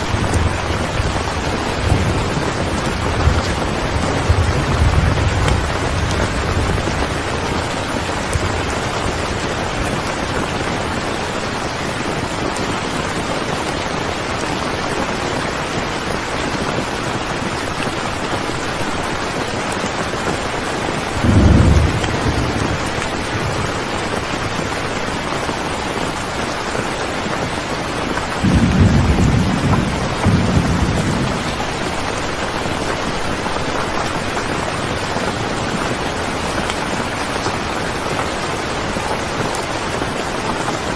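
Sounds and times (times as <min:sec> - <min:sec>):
low rumble of thunder: 0:00.0 - 0:11.2, 0:21.1 - 0:24.3, 0:28.3 - 0:36.0
steady rain: 0:00.0 - 0:40.9.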